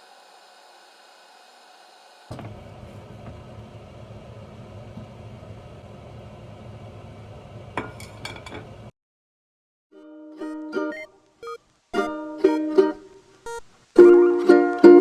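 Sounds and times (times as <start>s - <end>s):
low room noise: 10.1s - 15.0s.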